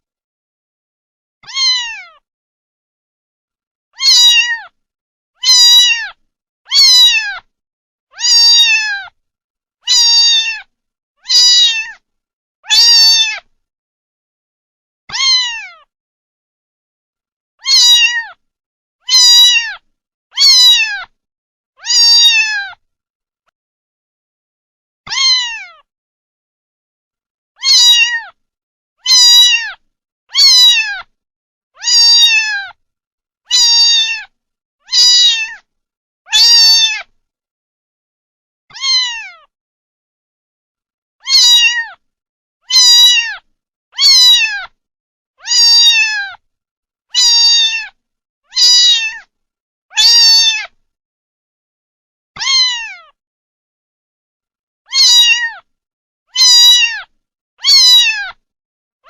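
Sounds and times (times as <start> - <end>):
kitten meowing: 1.4 - 2.2, 4.0 - 4.8, 5.4 - 7.5, 8.1 - 9.2, 9.9 - 12.0, 12.6 - 13.5, 15.1 - 15.9, 17.6 - 18.4, 19.1 - 19.8, 20.4 - 21.2, 21.8 - 22.8, 25.1 - 25.9, 27.6 - 28.4, 29.0 - 31.1, 31.8 - 32.8, 33.5 - 35.7, 36.3 - 37.1, 38.7 - 39.5, 41.2 - 42.0, 42.7 - 44.8, 45.4 - 46.4, 47.2 - 49.3, 49.9 - 50.8, 52.4 - 53.2, 54.9 - 55.7, 56.3 - 58.4.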